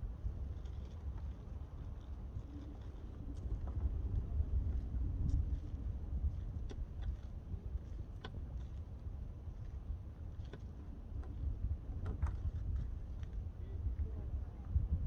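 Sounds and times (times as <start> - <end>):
wind buffeting microphone: 1.5 - 10.2, 11.1 - 15.0.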